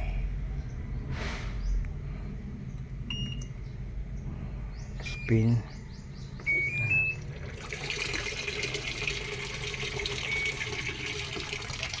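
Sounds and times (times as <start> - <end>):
faint machine hum: 0.0 - 12.0
rising short beeps: 6.4 - 7.2
water rushing through machine: 7.2 - 12.0.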